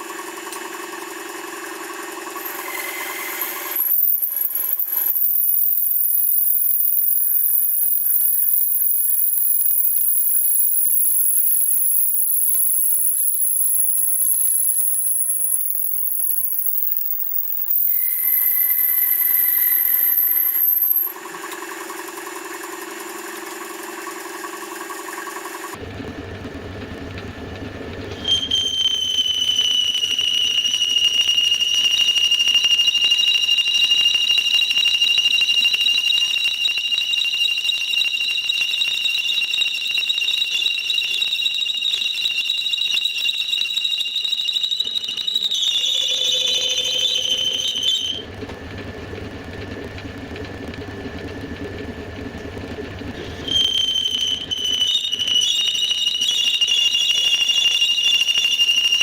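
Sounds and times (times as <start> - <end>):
high-pitched squealing whine: 2.0 - 21.6, 27.5 - 59.0
belt sander motor hum: 2.2 - 21.6.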